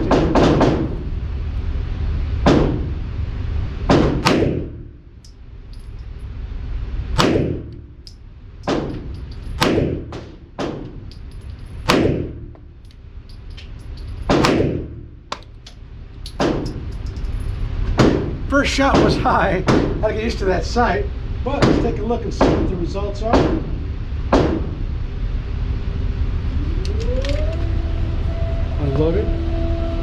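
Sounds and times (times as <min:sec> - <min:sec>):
pistol shots: 0:03.9 - 0:04.8, 0:07.2 - 0:07.8, 0:09.6 - 0:10.9, 0:11.9 - 0:12.5.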